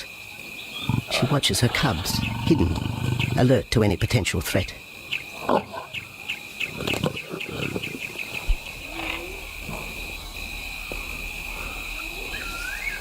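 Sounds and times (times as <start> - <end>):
insects chirping: 0.0 - 13.0
lions giving low calls: 0.8 - 3.4.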